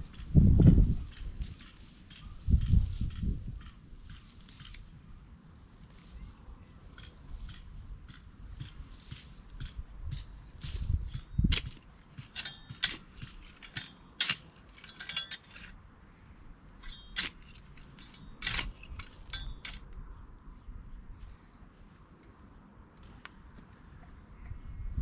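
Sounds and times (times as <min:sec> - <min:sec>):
garden fork digging stony soil: 0:00.0 - 0:05.1, 0:05.8 - 0:15.8, 0:16.8 - 0:19.9
fork tines clinking on stones: 0:09.6 - 0:15.8, 0:16.8 - 0:20.0.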